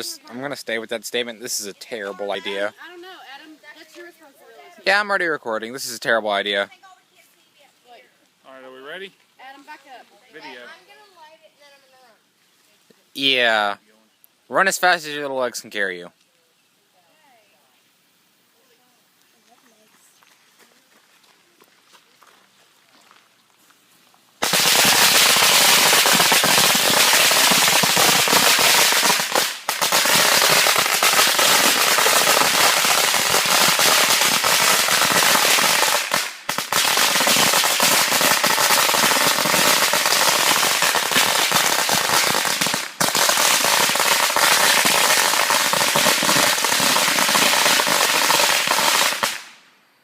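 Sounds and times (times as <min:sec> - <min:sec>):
firecrackers crackling: 0:00.0 - 0:04.1, 0:24.4 - 0:49.7.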